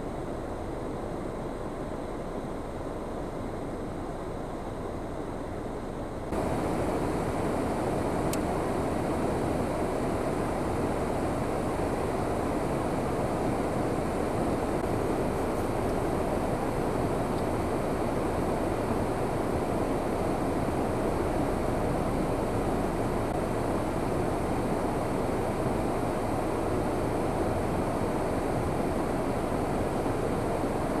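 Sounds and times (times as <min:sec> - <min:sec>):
steady rushing noise: 0:06.3 - 0:31.0.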